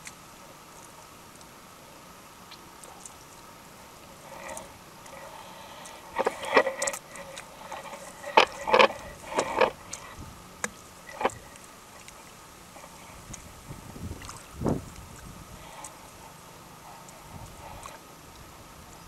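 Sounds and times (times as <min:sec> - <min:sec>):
short knocks and scrapes: 0:06.0 - 0:10.2.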